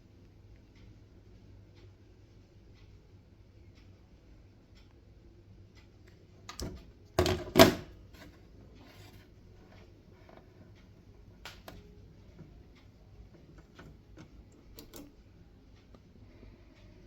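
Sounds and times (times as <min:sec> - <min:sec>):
sharp clicks and knocks: 0:13.4 - 0:15.2.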